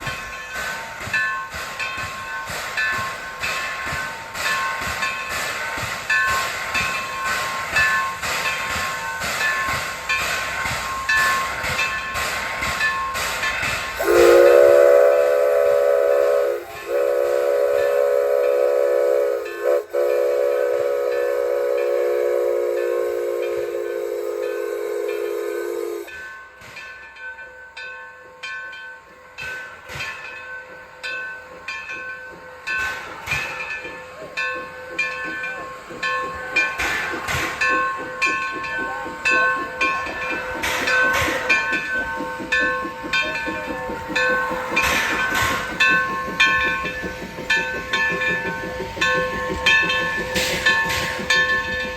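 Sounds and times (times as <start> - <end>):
sharp steam puffs: 0.0 - 27.7, 29.2 - 51.9
steam hissing: 0.0 - 51.9
steam locomotive whistle: 14.0 - 26.2.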